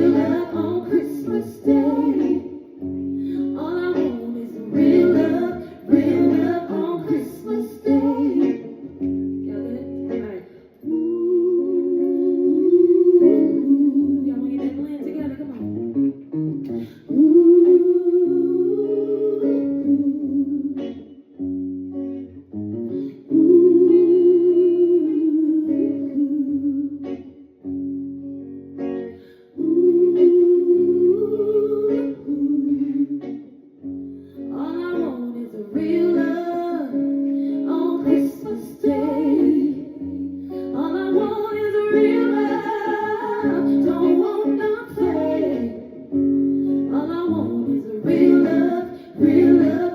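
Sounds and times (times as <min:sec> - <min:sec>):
person singing long notes: 0:00.0 - 0:14.7, 0:34.4 - 0:49.9.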